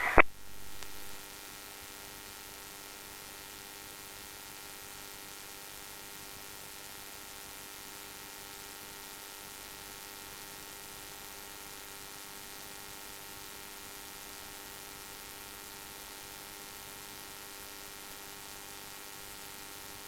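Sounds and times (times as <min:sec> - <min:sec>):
radio hiss and hum: 0:00.0 - 0:01.5.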